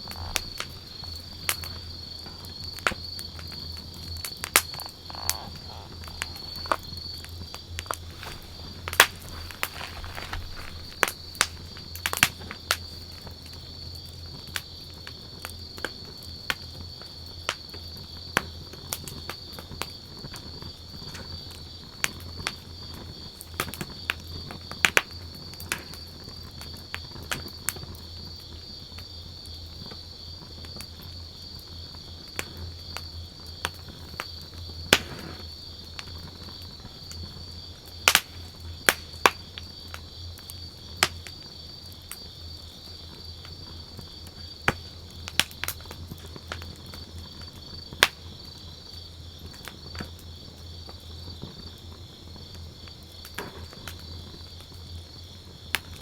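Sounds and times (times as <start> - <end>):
high insect trill: 0.0 - 18.3
campfire crackling and popping: 0.0 - 56.0.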